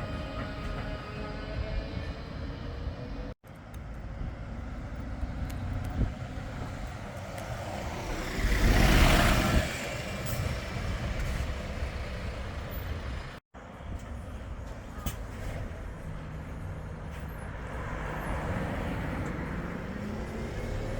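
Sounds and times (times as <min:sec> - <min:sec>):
background traffic noise: 0:00.0 - 0:20.9
vehicle passing close by: 0:04.3 - 0:13.1, 0:17.6 - 0:20.9.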